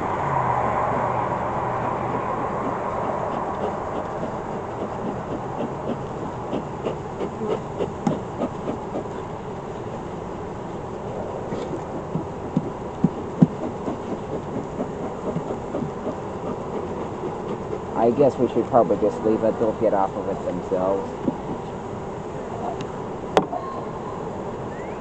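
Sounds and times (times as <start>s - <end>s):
bees humming: 0.0s - 25.0s
brush rubbing wooden frame: 0.9s - 10.1s, 11.5s - 18.9s.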